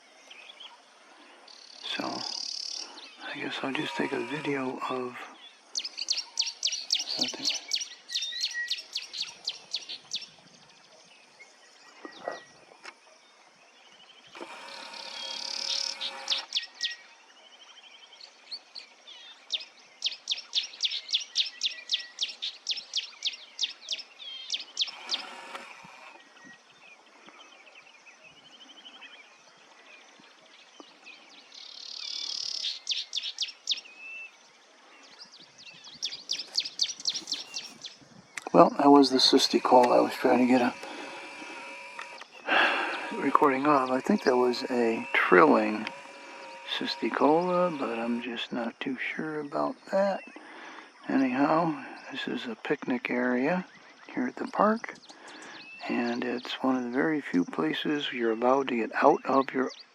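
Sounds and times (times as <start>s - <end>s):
bird buzzes: 1.7s - 5.1s, 5.8s - 10.3s, 14.3s - 16.9s, 20.2s - 26.5s, 36.0s - 37.9s, 38.8s - 48.4s
bird singing rapid high notes: 1.7s - 10.3s, 14.7s - 17.0s, 36.0s - 49.8s.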